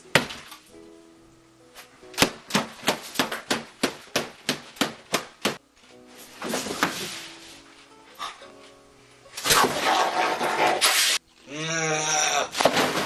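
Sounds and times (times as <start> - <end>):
light background music: 0.0 - 10.4.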